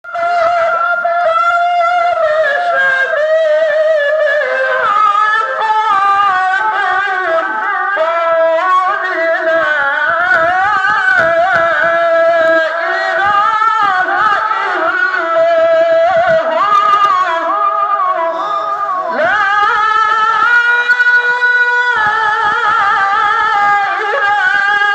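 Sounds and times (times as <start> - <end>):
man chanting recitation: 18.1 - 24.9.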